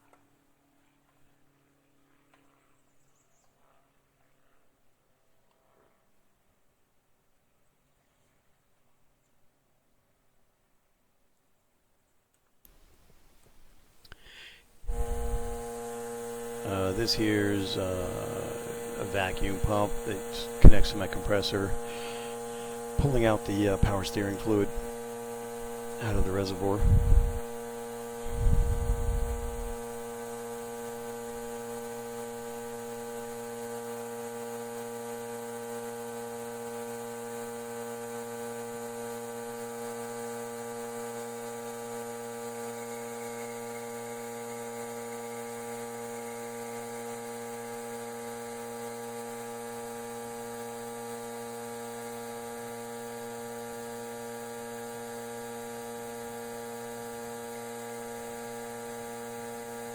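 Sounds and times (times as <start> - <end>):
faint hiss: 12.7 - 32.5
air compressor humming: 12.7 - 59.9.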